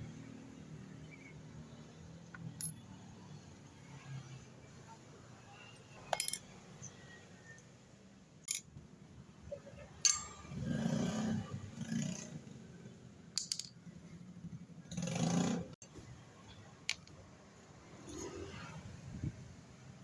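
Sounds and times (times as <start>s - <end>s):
metal tools clinking: 6.1s - 6.5s, 10.1s - 10.6s, 13.4s - 13.8s.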